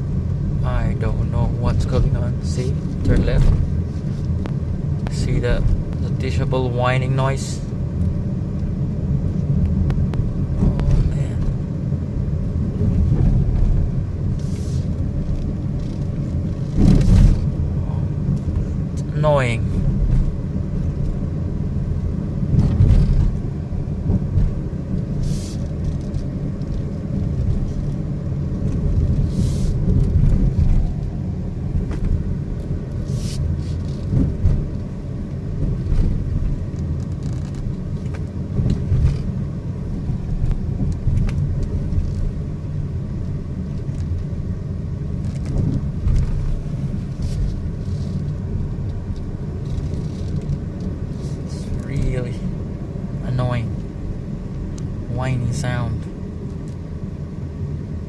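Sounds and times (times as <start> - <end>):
car road and engine rumble: 0.0 - 58.0.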